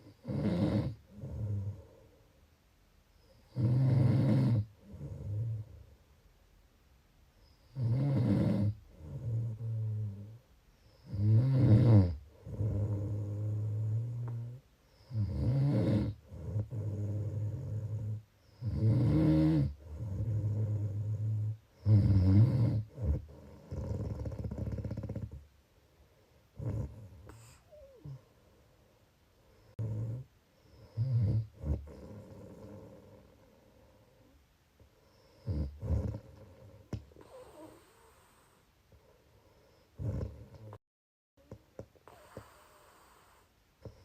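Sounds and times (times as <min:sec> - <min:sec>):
person snoring: 0:00.2 - 0:02.0, 0:11.1 - 0:25.4, 0:26.6 - 0:28.2, 0:40.0 - 0:40.8.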